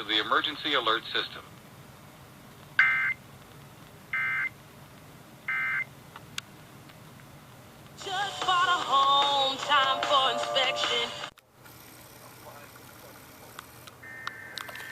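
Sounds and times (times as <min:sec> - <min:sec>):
music on radio: 0:08.0 - 0:11.4.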